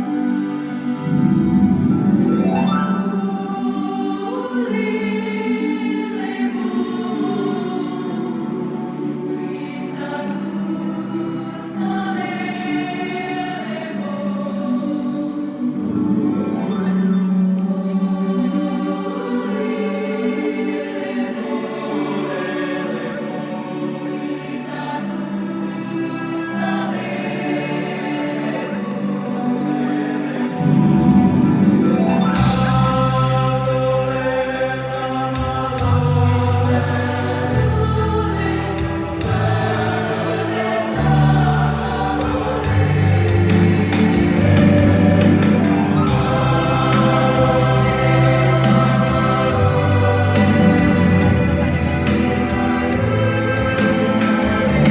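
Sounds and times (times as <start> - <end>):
mixed choir singing: 0.0 - 54.9.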